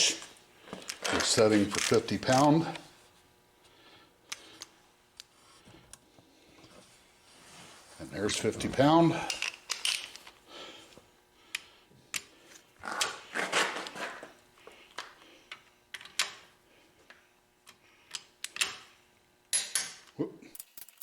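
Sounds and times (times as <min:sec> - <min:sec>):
scraping handling sounds: 0:13.0 - 0:14.4.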